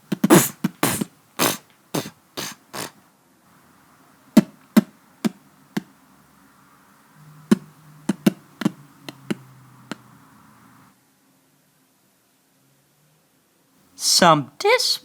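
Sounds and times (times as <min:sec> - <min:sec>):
sharp taps: 0:04.4 - 0:05.9, 0:07.5 - 0:10.0.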